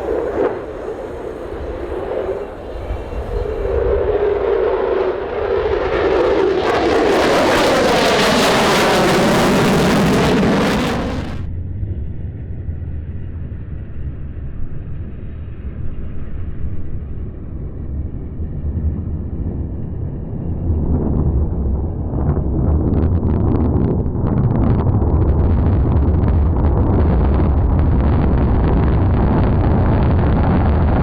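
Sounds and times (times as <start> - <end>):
jet engines flyby: 0.0 - 11.5
wind on microphone: 0.0 - 11.5, 16.0 - 31.0
low rumble: 0.0 - 31.0.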